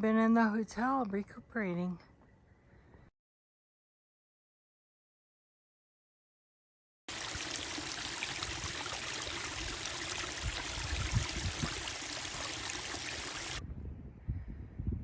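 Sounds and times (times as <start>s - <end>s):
stream running: 7.1s - 13.6s.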